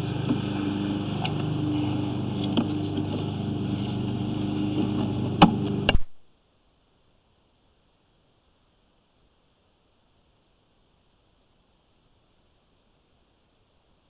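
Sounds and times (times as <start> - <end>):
engine humming: 0.0 - 6.0.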